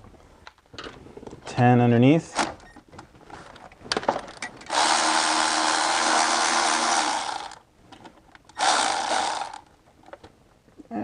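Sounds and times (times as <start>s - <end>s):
handheld power tool motor: 4.7s - 7.6s, 8.5s - 9.7s.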